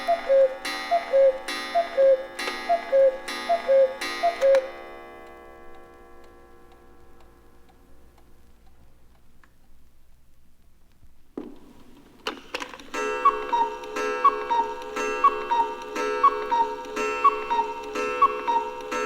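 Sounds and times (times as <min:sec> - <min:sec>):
cuckoo clock call: 0:00.0 - 0:07.3, 0:12.2 - 0:19.0
clock ticking: 0:00.0 - 0:09.8, 0:11.4 - 0:19.0.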